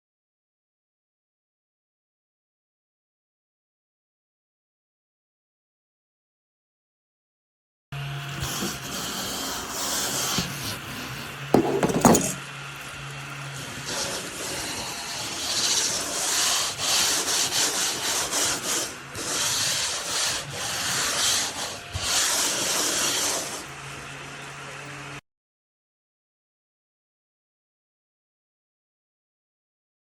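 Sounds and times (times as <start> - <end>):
scraping on a hard surface: 11.6 - 12.4, 13.9 - 23.7.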